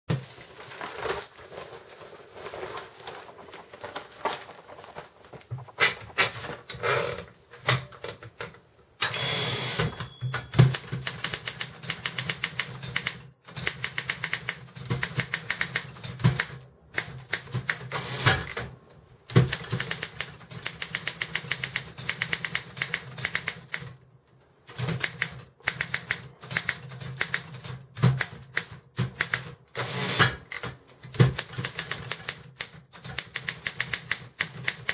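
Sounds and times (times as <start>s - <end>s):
typewriter carriage return rattle: 9.0s - 16.5s, 29.1s - 34.9s.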